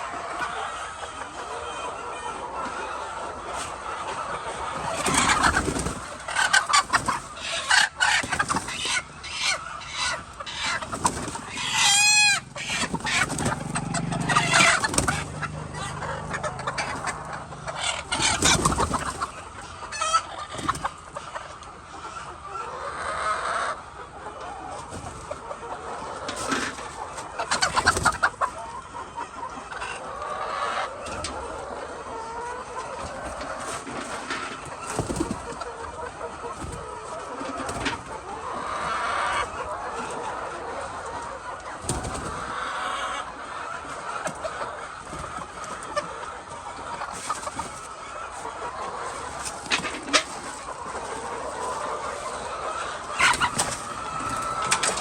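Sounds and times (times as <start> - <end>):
loud drawn-out hen squawk: 0.0 - 21.5, 51.2 - 55.0
hens clucking and squawking: 0.0 - 55.0.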